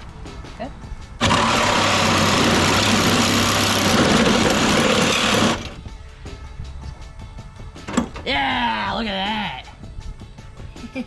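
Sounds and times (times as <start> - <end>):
motor-driven machine running: 1.2 - 5.8.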